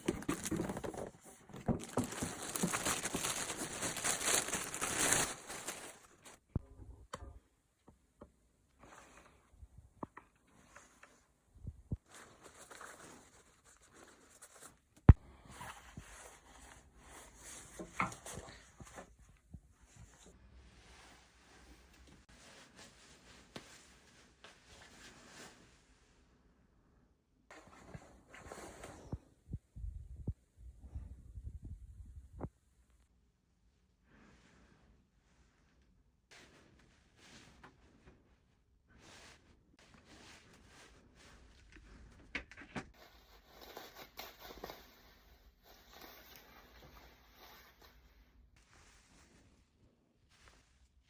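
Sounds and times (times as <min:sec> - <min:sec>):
jacket and packaging rustling: 0:00.0 - 0:06.4, 0:12.0 - 0:14.8
faint soft rustle: 0:10.3 - 0:26.4, 0:34.1 - 0:42.3, 0:42.9 - 0:51.0.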